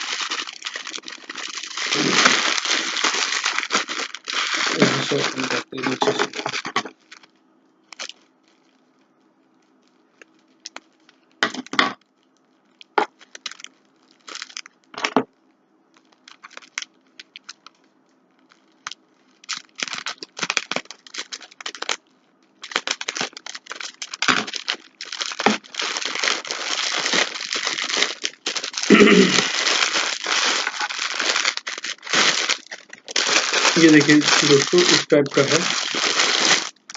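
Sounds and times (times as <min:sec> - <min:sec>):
wrapping crinkling and tearing: 0:00.0 - 0:36.9.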